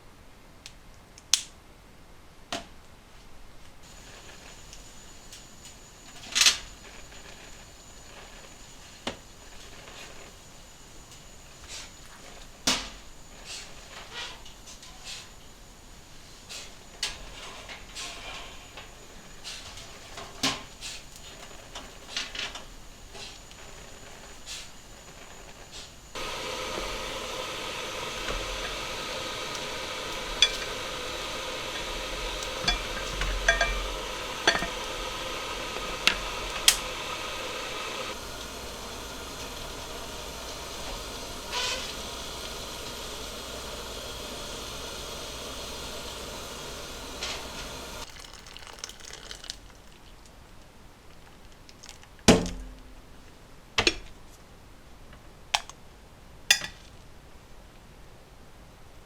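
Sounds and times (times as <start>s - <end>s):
food sizzling: 3.9s - 8.7s, 16.5s - 50.0s
dishes clinking: 30.3s - 35.0s, 56.5s - 56.8s.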